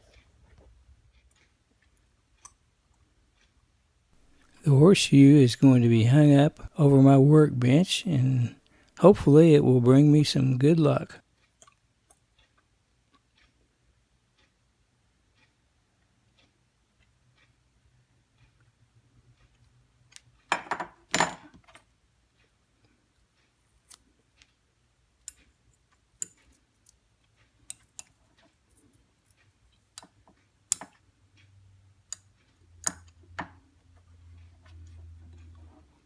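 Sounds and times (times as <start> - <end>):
faint low hum: 4.2 - 11.2
metal tools clicking and knocking: 20.5 - 21.9, 27.7 - 31.0.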